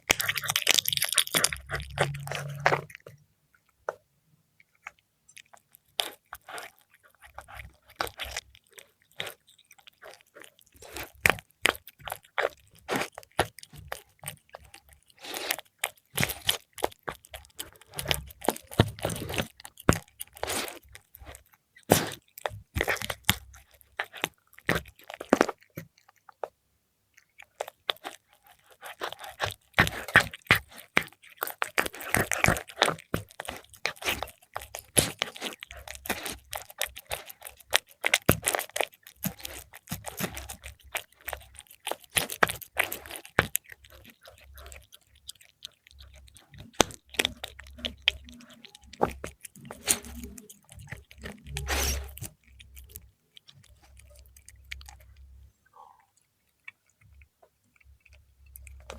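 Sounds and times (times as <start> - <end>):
cat chewing crunchy food: 0.0 - 58.9.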